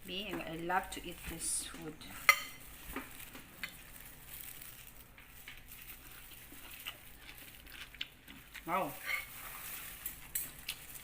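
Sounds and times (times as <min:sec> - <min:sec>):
person chewing crunchy food: 0:02.6 - 0:11.0.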